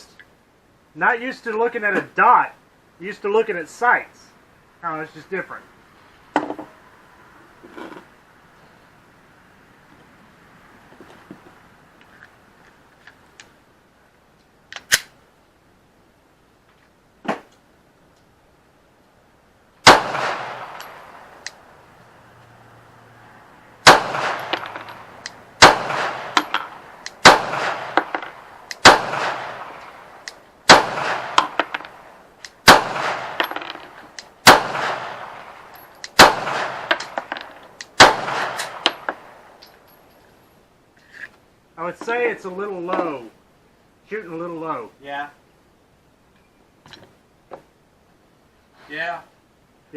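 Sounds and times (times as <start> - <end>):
pistol shots with echo: 19.8 - 21.4, 23.8 - 25.0, 25.6 - 33.5, 34.4 - 37.3, 38.0 - 39.4.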